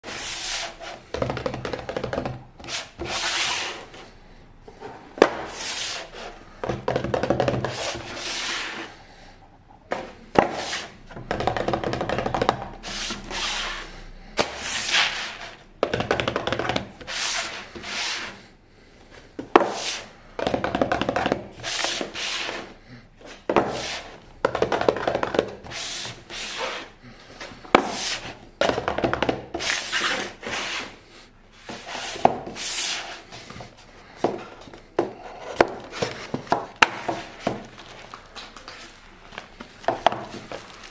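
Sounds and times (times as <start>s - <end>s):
packaging rubbing and rustling: 37.0s - 40.9s.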